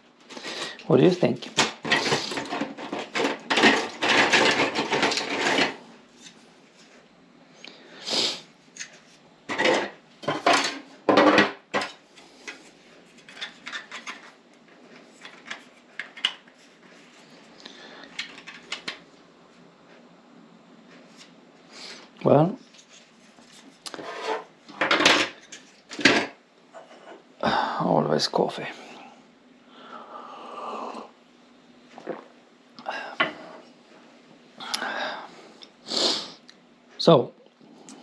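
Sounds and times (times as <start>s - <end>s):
objects clattering and rustling: 0.2s - 7.0s, 8.7s - 19.1s, 22.6s - 27.3s.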